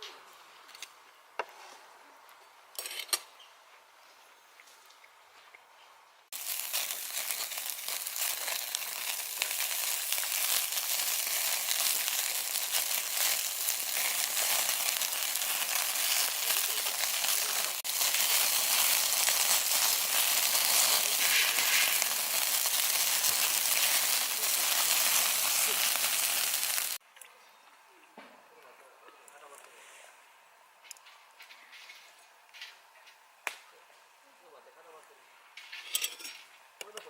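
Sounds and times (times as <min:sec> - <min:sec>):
food sizzling in hot oil: 0:06.3 - 0:27.0.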